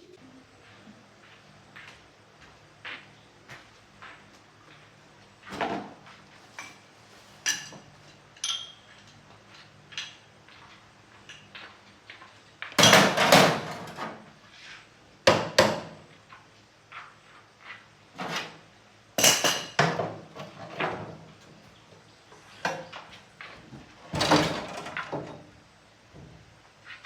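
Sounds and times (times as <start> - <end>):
hand tools knocking on wood: 15.3 - 16.0.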